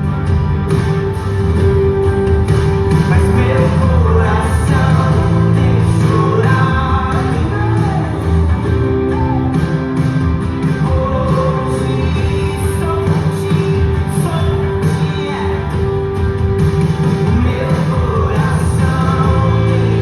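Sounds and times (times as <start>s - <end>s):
band with guitar: 0.0s - 20.0s
person singing: 2.8s - 9.9s, 10.6s - 16.2s, 17.0s - 20.0s.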